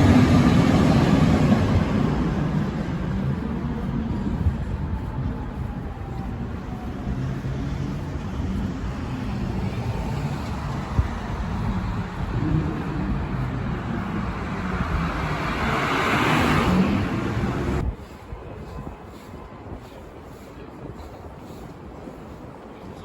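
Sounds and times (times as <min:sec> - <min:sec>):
low engine rumble: 0:00.0 - 0:19.1
passing vehicle hiss: 0:06.6 - 0:17.9.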